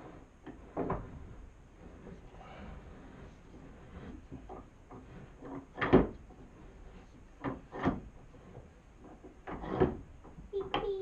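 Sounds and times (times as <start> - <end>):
wooden vise knocking and clunking: 4.1 - 6.5, 7.4 - 10.8.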